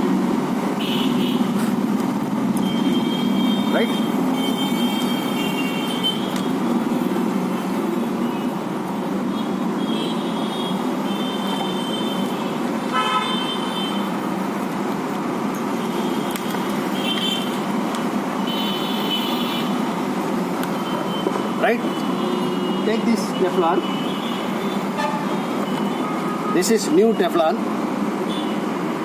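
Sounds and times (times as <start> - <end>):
road traffic rumble: 0.0 - 29.0
vehicle horns tooting: 0.8 - 1.5, 2.6 - 6.6, 9.2 - 14.2, 15.8 - 17.6, 18.4 - 19.8, 20.9 - 27.3.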